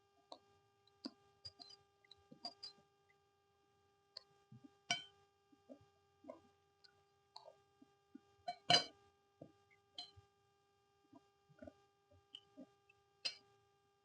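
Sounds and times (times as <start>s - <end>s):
small clicks and taps: 0.3s - 2.8s
soft chewing: 5.6s - 8.4s, 11.2s - 13.0s.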